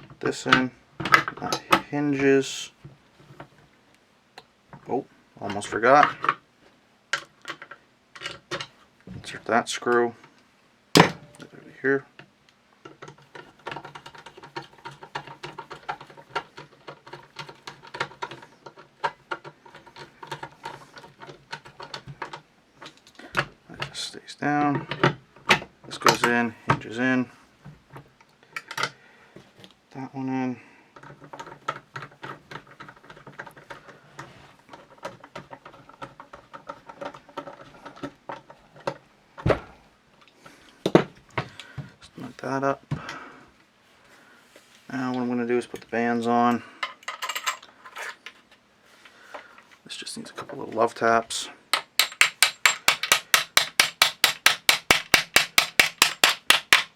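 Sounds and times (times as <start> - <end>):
screwdriver clicks and scrapes on metal: 12.9 - 23.9
metal rifle parts clicking: 51.8 - 56.9.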